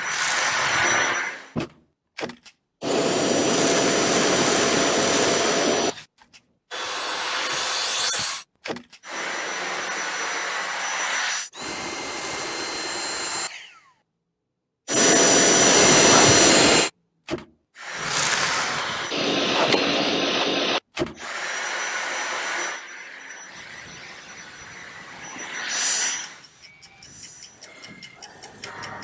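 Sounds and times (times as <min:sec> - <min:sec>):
vacuum cleaner running: 0:02.8 - 0:06.0, 0:09.1 - 0:13.6, 0:14.9 - 0:16.9, 0:17.9 - 0:20.8, 0:21.4 - 0:23.5.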